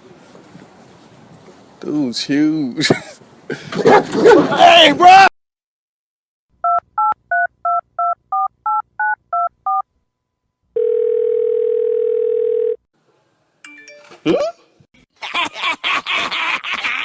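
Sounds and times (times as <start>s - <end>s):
telephone ringback tone: 10.8s - 12.8s.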